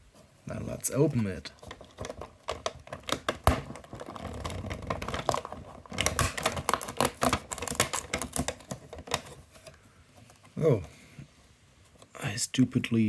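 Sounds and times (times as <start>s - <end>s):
sharp clicks and crackles: 1.5s - 9.4s.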